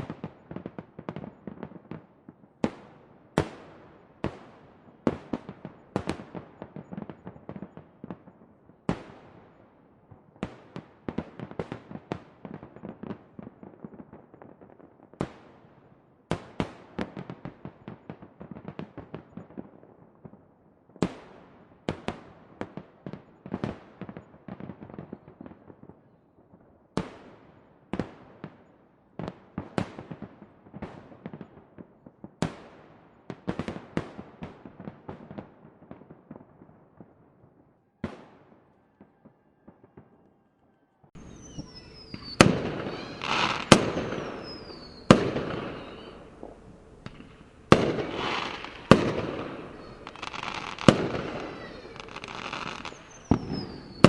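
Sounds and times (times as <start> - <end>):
fireworks bangs and crackling: 0.0 - 40.3, 41.2 - 54.0
falling firework whistles: 41.2 - 54.0.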